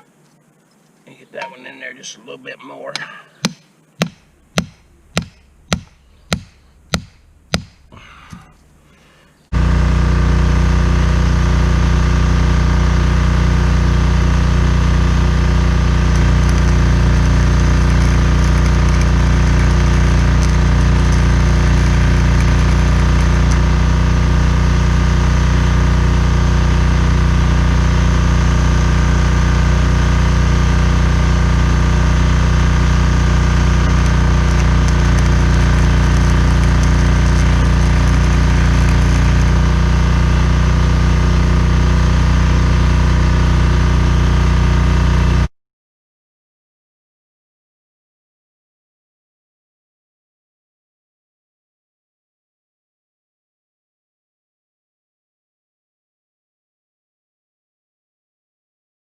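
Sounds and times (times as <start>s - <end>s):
loud steady mechanical hum: 2.9s - 45.5s
hammer striking metal: 3.0s - 7.9s.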